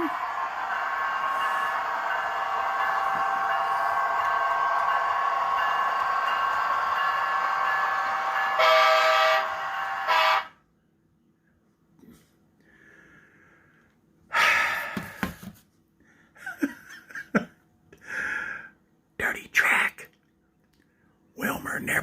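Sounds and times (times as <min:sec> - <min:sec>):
model train locomotive running: 0:00.0 - 0:10.6
model train horn blasts: 0:08.5 - 0:10.6.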